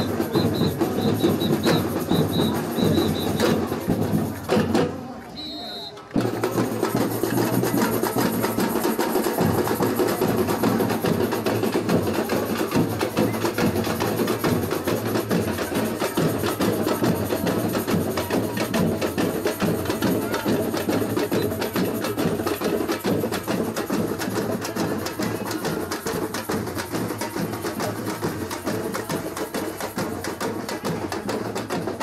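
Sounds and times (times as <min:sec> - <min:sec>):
samba percussion ensemble drumming: 0:00.0 - 0:32.0.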